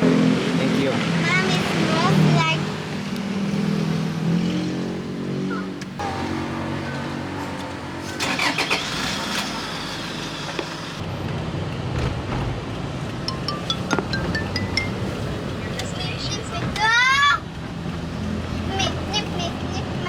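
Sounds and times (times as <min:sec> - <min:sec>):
car engine running: 0:00.8 - 0:11.0.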